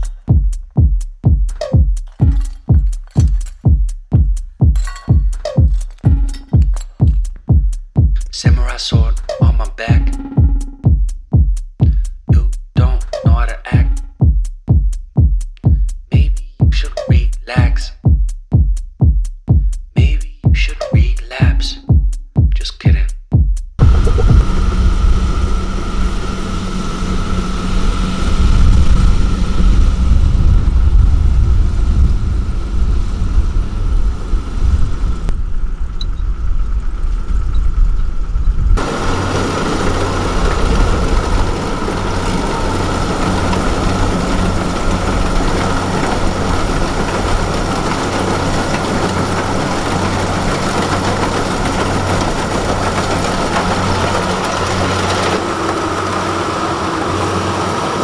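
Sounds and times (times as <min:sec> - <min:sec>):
machinery rattling: 0:04.7 - 0:07.2, 0:23.8 - 0:58.0
constant machine whine: 0:23.8 - 0:58.0
diesel engine running: 0:23.8 - 0:58.0.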